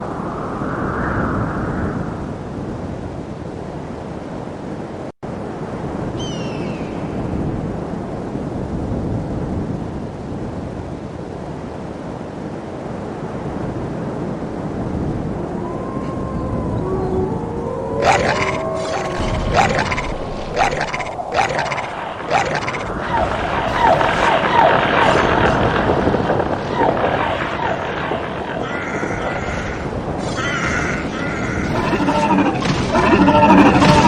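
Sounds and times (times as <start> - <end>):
low rushing noise: 17.7 - 33.4.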